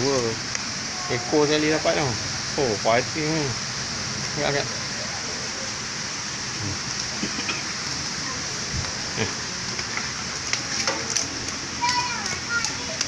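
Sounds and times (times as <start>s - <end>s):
steady hiss: 0.0s - 13.0s
faint voices: 4.3s - 9.7s.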